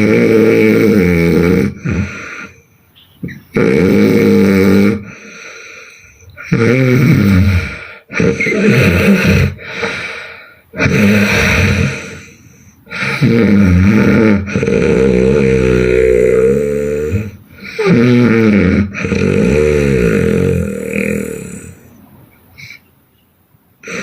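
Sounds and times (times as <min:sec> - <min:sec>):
woman snoring loudly: 0:00.0 - 0:02.6, 0:03.5 - 0:21.8
quiet breathing: 0:01.7 - 0:03.4, 0:05.0 - 0:06.5, 0:07.5 - 0:13.2.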